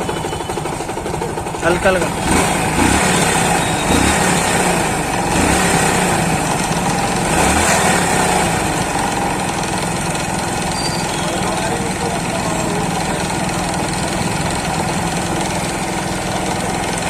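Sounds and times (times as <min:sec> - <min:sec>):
abnormal engine knocking noise: 0:00.0 - 0:17.0
motorcycle engine revving in blips: 0:00.0 - 0:17.0.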